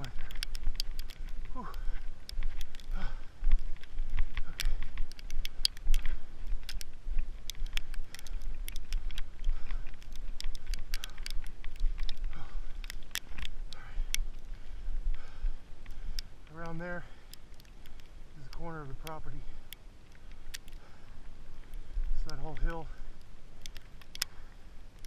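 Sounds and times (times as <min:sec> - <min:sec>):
wind buffeting microphone: 0:00.0 - 0:17.0
icy snow ticking and crackling: 0:00.0 - 0:25.0.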